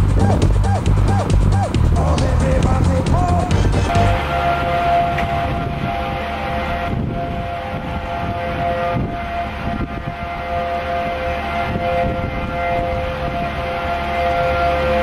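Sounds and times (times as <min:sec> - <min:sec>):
low rumble of wind: 0:00.0 - 0:15.0
warning siren steady tone: 0:03.6 - 0:15.0.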